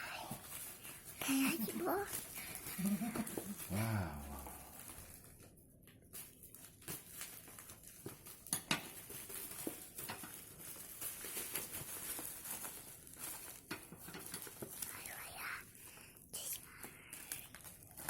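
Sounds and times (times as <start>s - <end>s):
packaging clicks and rustles: 4.4s - 15.5s, 16.7s - 18.0s.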